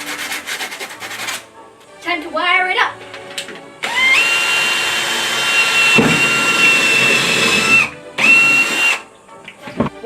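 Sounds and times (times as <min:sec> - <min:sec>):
electric drill whine: 0:03.8 - 0:09.0.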